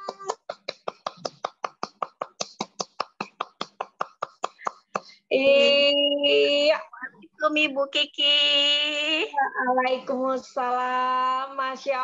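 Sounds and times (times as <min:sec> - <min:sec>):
fast percussive taps: 0:00.0 - 0:05.2.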